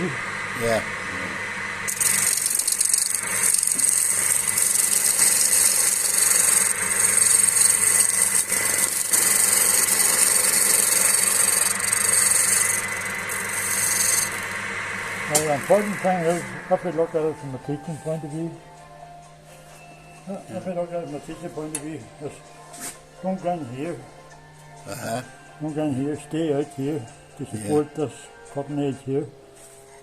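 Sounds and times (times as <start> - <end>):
lathe motor hum: 0.0 - 18.2
tool scraping spinning wood: 1.9 - 16.6.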